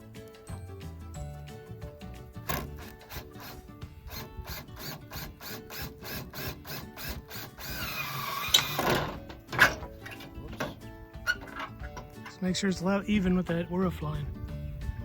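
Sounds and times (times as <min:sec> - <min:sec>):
background music with steady beat: 0:00.0 - 0:15.0
power tool wavering whine: 0:02.6 - 0:09.2.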